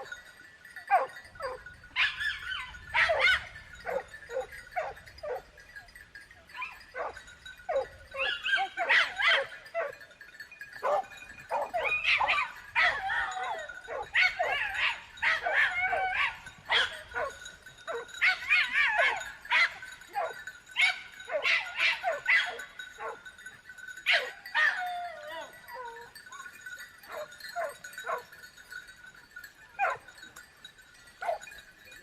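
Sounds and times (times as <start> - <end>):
dog yipping and whining: 0.9 - 5.5, 6.5 - 10.0, 10.8 - 23.2, 24.1 - 28.2.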